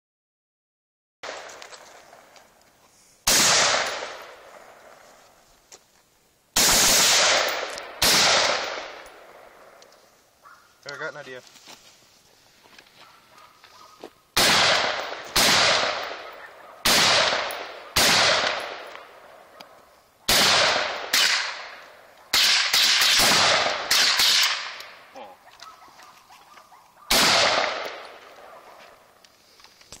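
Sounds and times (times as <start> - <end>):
rifle shots with echo: 3.3 - 5.0, 6.6 - 9.8, 14.4 - 19.7, 20.3 - 25.0, 27.0 - 28.9.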